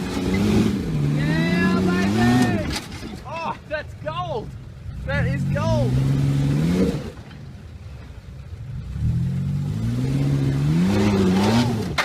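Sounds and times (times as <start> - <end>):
engine revving: 0.0 - 2.8, 4.8 - 7.3, 8.6 - 12.0.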